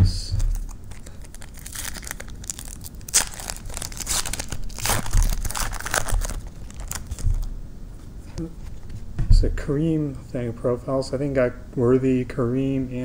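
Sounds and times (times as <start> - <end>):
wrapper crinkling and tearing: 0.4 - 7.5.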